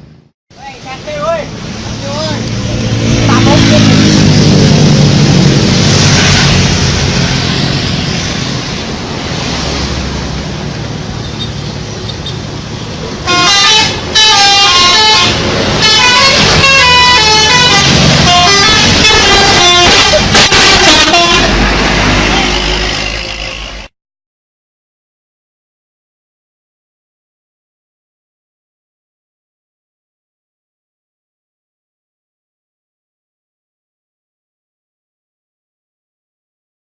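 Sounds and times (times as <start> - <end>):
bus engine rumble: 0.0 - 23.9
road noise: 0.0 - 24.0
musical air horn tune: 13.2 - 23.9.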